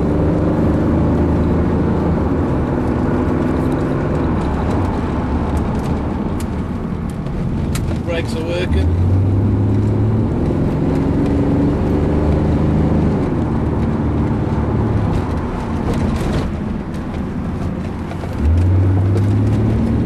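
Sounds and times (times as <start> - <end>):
car engine running: 0.0 - 20.0
road noise: 0.0 - 20.0.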